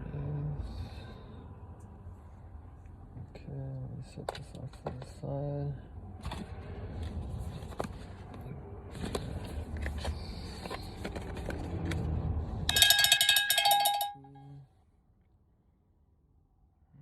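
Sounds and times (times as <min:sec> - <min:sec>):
packaging handled with clicks and rustling: 0:09.0 - 0:12.1.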